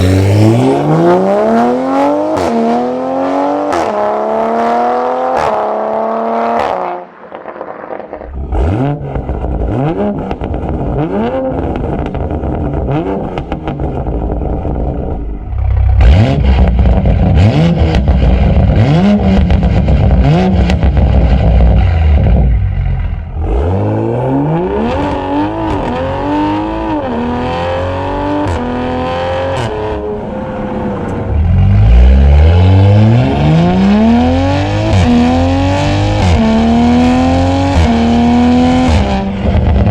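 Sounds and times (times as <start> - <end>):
car engine revving: 0.0 - 39.9.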